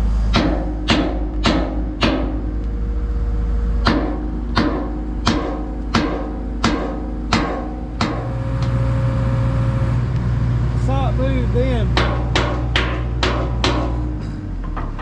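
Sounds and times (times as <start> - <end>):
sustained held tones: 6.4 - 10.0.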